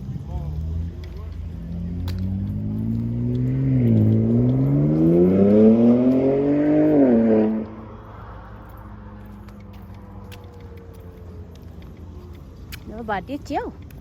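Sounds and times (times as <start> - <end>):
vehicle engine accelerating: 0.0 - 12.8.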